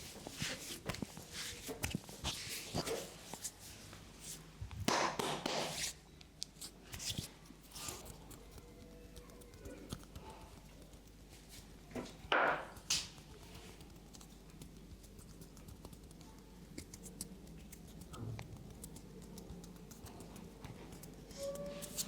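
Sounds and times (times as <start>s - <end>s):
hands rubbing hair: 0.0s - 4.5s, 5.2s - 6.0s.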